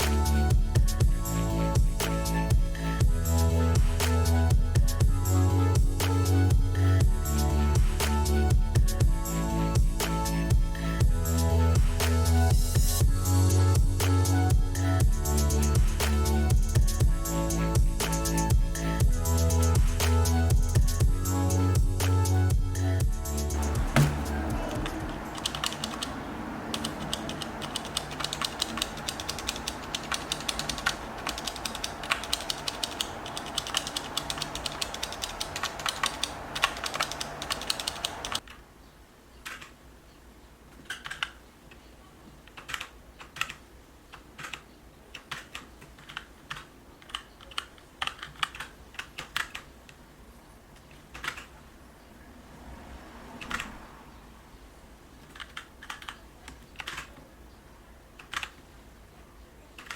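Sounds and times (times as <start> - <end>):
typing on mechanical keyboard: 23.9 - 38.5, 39.4 - 39.7, 40.9 - 41.4, 42.5 - 49.7, 51.1 - 51.6, 53.4 - 53.7, 55.2 - 57.2, 58.2 - 58.6.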